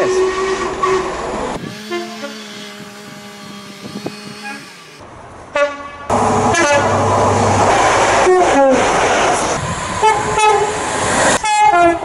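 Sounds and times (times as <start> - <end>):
train rumbling: 5.0 - 12.0
train horn: 5.6 - 7.0, 10.0 - 10.8, 11.4 - 12.0.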